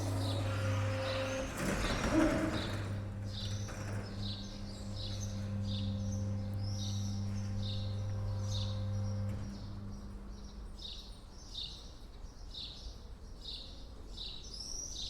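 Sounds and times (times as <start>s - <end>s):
steady low hum: 0.0s - 10.9s.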